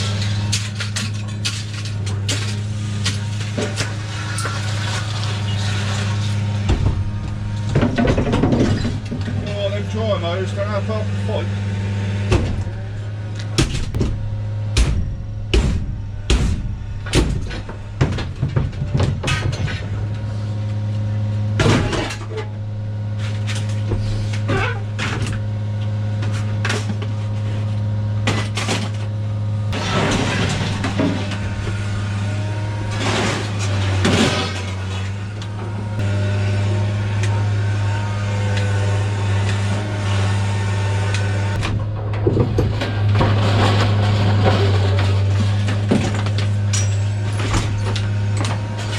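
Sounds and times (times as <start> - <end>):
scrap metal clanking: 0.0 - 10.1, 21.6 - 25.4, 29.7 - 35.8, 41.6 - 48.9
low engine hum: 1.8 - 38.3.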